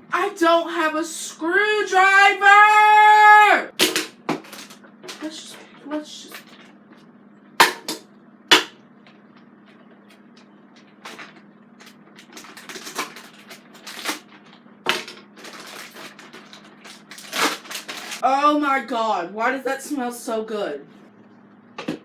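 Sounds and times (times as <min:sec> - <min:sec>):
plastic packaging crackling and clicking: 0:03.8 - 0:05.4, 0:08.5 - 0:18.2.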